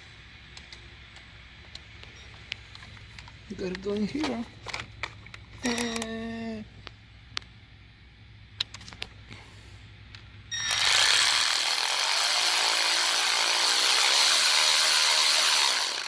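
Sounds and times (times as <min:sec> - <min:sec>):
tool handling clicks: 0:00.5 - 0:06.1
power tool driving a fastener: 0:10.6 - 0:16.0.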